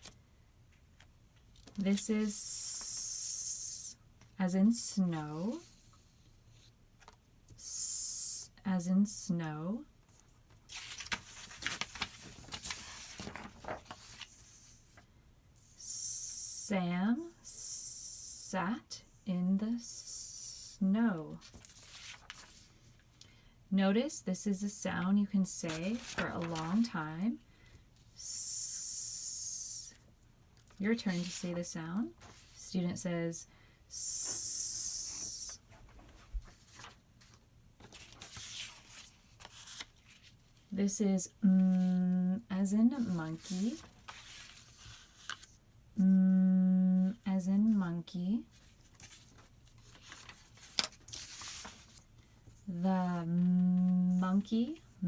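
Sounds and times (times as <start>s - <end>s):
paper rustling: 10.1s - 15.0s, 21.4s - 22.9s, 25.7s - 26.9s, 31.0s - 31.5s, 32.1s - 32.6s, 35.2s - 40.7s, 43.0s - 45.6s, 48.5s - 52.7s.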